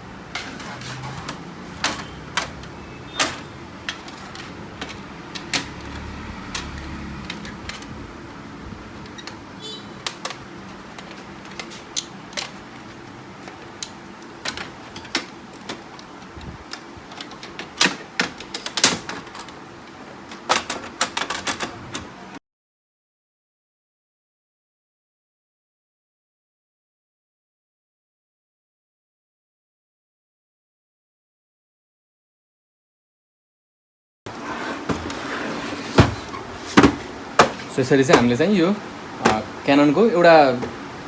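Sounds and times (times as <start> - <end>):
plastic printer parts clicking: 0.4 - 8.0, 10.0 - 22.3, 34.9 - 39.6.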